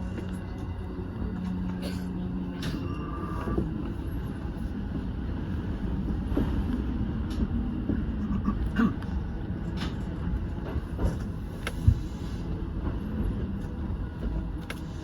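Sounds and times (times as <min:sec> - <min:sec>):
train wheels rumbling on rails: 0:00.0 - 0:15.0.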